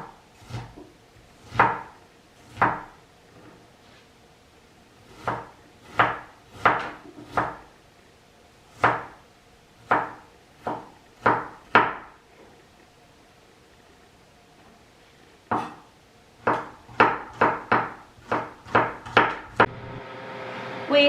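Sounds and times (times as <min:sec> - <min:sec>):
knife chopping on cutting board: 0:00.0 - 0:03.0, 0:05.1 - 0:07.7, 0:08.7 - 0:09.2, 0:09.8 - 0:12.2, 0:15.5 - 0:19.7.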